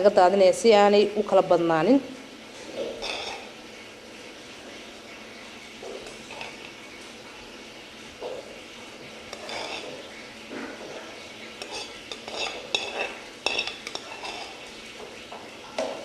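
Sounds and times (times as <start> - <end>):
metal utensil clinking on dish: 2.9 - 3.5, 9.3 - 10.0, 11.6 - 14.7.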